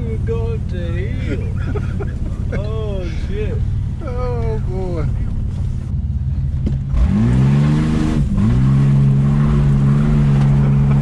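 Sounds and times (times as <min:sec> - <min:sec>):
truck engine revving: 0:00.0 - 0:11.0.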